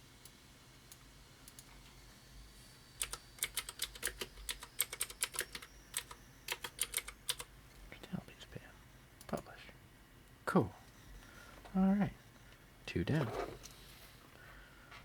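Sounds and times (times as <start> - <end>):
keyboard typing: 3.0 - 7.5.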